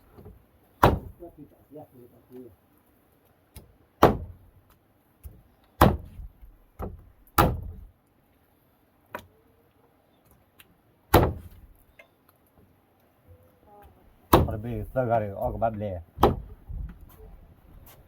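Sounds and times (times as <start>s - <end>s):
sharp knocks: 0.8s - 1.2s, 4.0s - 4.4s, 5.8s - 7.9s, 11.1s - 11.6s, 14.3s - 14.6s, 16.2s - 17.0s.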